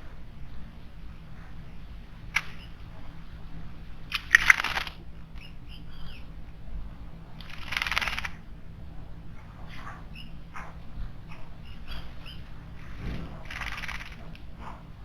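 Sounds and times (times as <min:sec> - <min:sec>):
faint bird chirps: 0:04.2 - 0:06.4, 0:09.4 - 0:15.0
harsh noisy bird bursts: 0:12.2 - 0:14.3.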